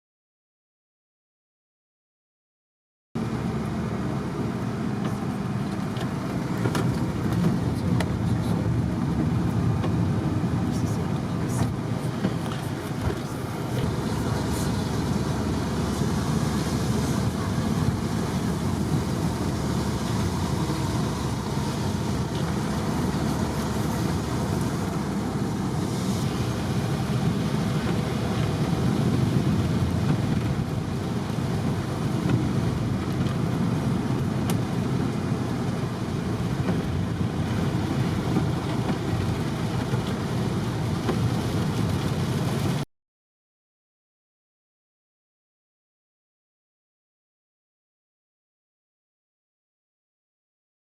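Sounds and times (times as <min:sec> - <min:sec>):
bus engine and road noise: 0:03.2 - 0:42.9.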